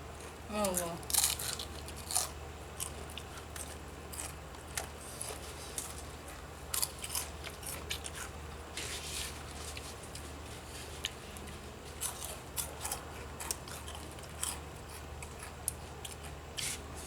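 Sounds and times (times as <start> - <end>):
low steady hum: 0.0 - 17.0
chips crunching while eating: 0.2 - 9.0, 11.9 - 16.8.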